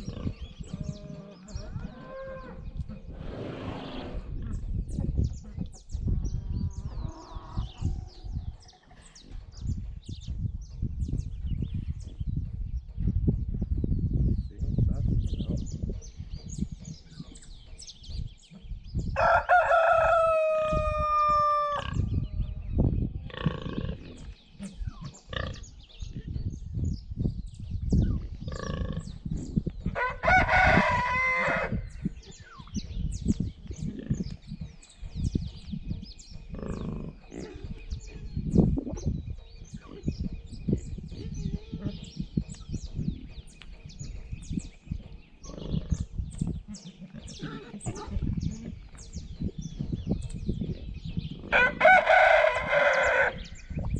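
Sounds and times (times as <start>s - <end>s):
small birds chirping: 0.0s - 53.9s
low bumps and rustles: 4.2s - 19.2s, 31.8s - 51.5s
rooster crowing: 19.2s - 21.8s, 30.0s - 31.8s, 51.5s - 53.4s.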